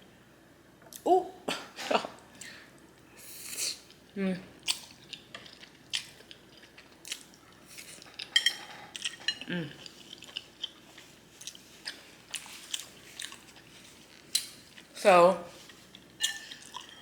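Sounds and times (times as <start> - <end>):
wet chewing sounds: 4.6 - 17.0
person humming: 9.5 - 9.8.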